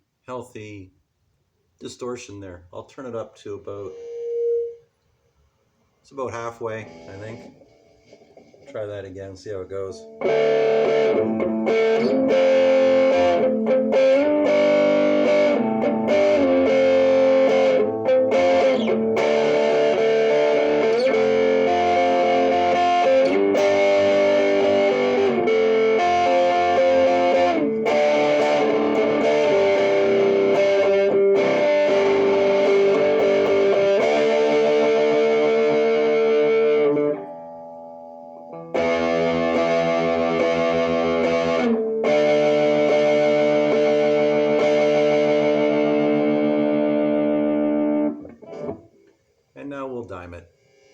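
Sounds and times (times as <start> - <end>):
distorted electric guitar chords: 6.8 - 8.6, 9.9 - 49.0.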